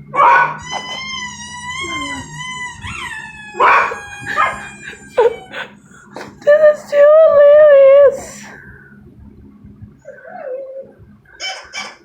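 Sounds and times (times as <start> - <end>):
dog whining: 0.0 - 6.6, 10.0 - 12.0
dog barking: 0.1 - 1.0, 3.6 - 4.7.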